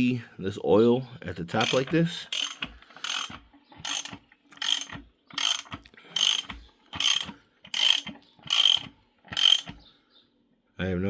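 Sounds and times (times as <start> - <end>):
ratchet wrench clicking: 1.6 - 9.8.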